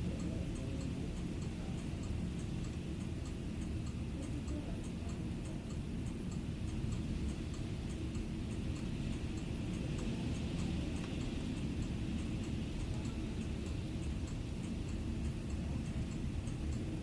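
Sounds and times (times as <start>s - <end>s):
faint high ticks: 0.1s - 17.0s.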